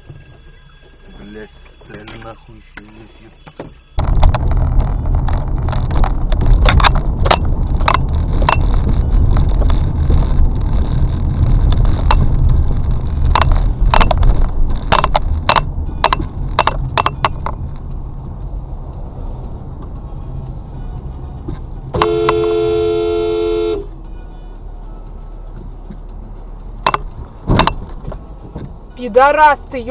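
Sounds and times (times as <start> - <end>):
vehicle rumble from inside: 0.0 - 29.9
sharp irregular cracks: 4.0 - 17.8.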